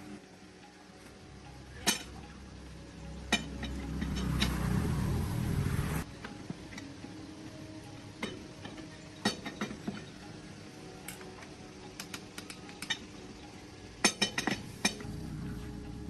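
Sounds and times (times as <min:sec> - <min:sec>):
metal tools clinking and tapping: 0:01.7 - 0:02.3, 0:03.1 - 0:04.7, 0:08.2 - 0:10.2, 0:11.0 - 0:13.2, 0:14.0 - 0:15.1.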